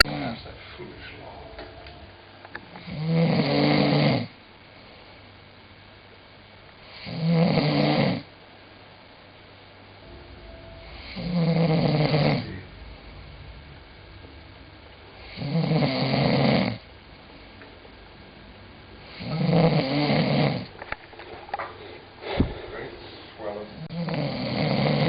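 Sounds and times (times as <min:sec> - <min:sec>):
person snoring: 0:02.8 - 0:04.3, 0:06.9 - 0:08.3, 0:10.9 - 0:12.6, 0:15.2 - 0:16.8, 0:19.0 - 0:20.7, 0:23.9 - 0:25.0.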